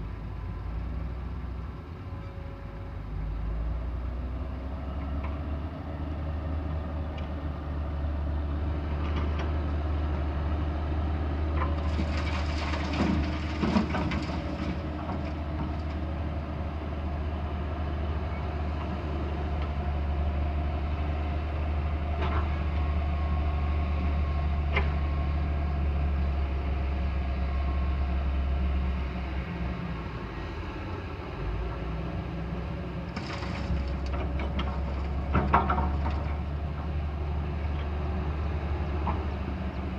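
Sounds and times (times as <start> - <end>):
diesel engine droning: 0.0 - 39.9
scraping and clatter: 11.8 - 15.4, 33.1 - 36.4.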